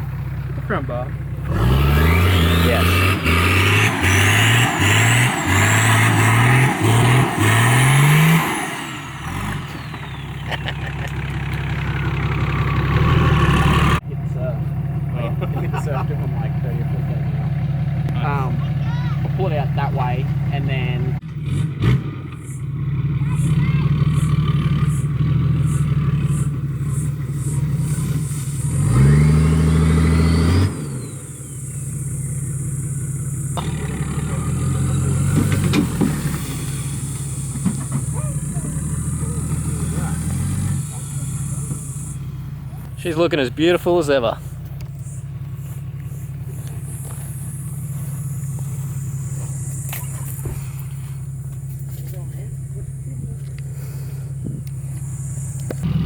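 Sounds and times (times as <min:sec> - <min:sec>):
car engine idling: 0:00.0 - 0:21.4, 0:22.2 - 0:29.7, 0:30.7 - 0:56.0
engine knock: 0:09.9 - 0:21.0, 0:23.0 - 0:27.9.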